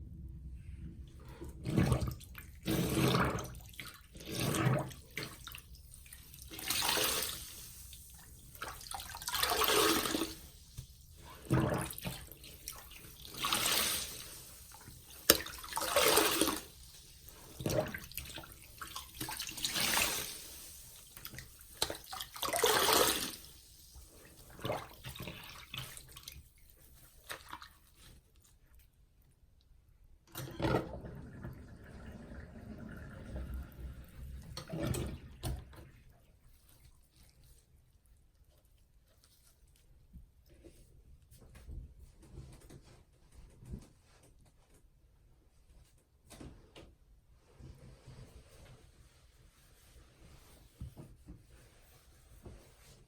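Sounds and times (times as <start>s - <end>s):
soapy sponge squelching: 1.2s - 28.6s, 34.6s - 39.9s, 47.5s - 53.0s.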